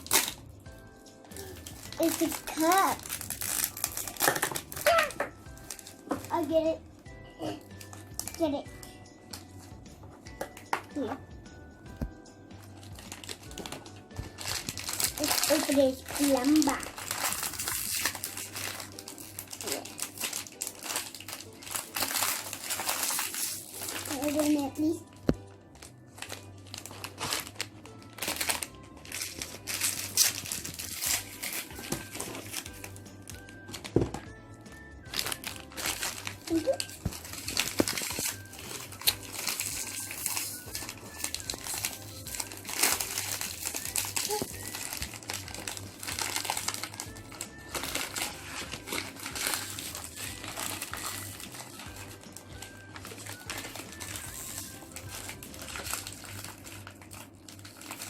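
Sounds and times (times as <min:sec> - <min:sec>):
packaging crinkling: 0:00.0 - 0:00.5, 0:01.3 - 0:06.7, 0:12.6 - 0:34.2, 0:35.1 - 0:58.0
background music: 0:00.0 - 0:58.0.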